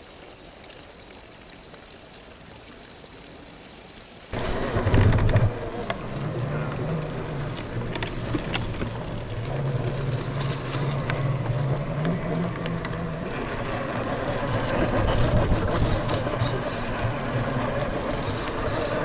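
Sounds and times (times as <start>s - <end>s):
tyres scraping on rock: 4.4s - 19.0s.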